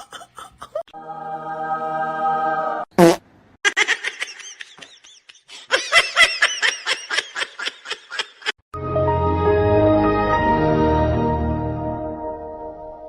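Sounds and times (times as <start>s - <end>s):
high-pitched giggling laughter: 3.6s - 8.6s.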